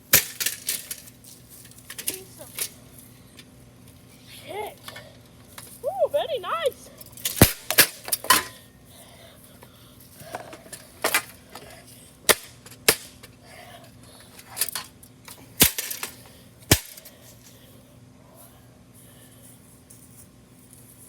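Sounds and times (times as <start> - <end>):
ceiling fan being smashed: 0.0 - 2.8, 7.1 - 8.6, 12.2 - 13.3, 14.6 - 17.1.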